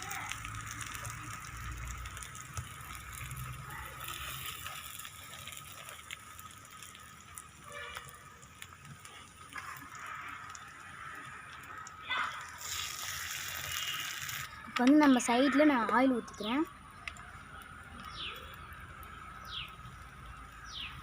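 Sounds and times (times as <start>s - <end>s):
bread sizzling in a pan: 0.0s - 21.0s.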